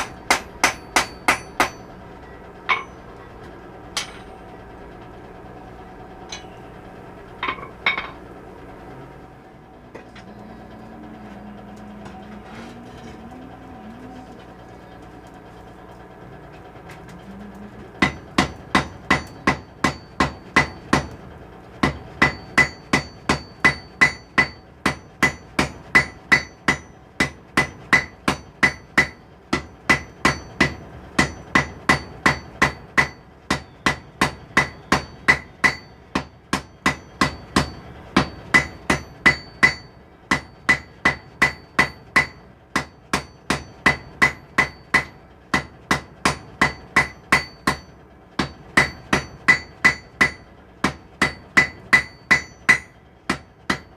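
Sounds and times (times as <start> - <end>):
hammer striking steel on anvil: 0.0 - 3.1, 3.9 - 4.5, 6.2 - 6.7, 7.4 - 8.2, 18.0 - 21.2, 21.8 - 53.9.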